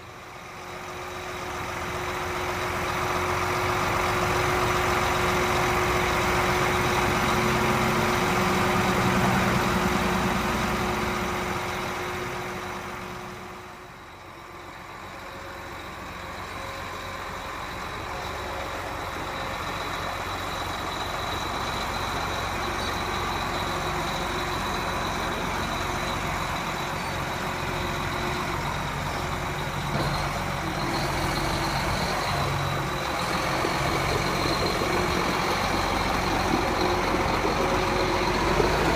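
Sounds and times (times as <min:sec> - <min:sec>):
farm machine engine running: 0:00.0 - 0:38.9
steady whine: 0:31.8 - 0:38.9.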